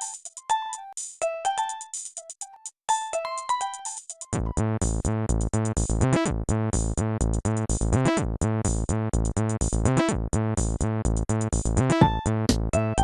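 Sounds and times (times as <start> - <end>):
synthesized ringtone tune: 2.9 - 4.0
drum-machine beat: 11.6 - 13.0.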